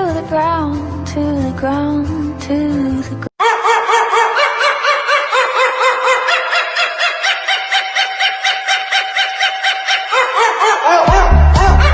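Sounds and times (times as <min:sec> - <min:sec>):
dog yapping: 0:03.4 - 0:11.9.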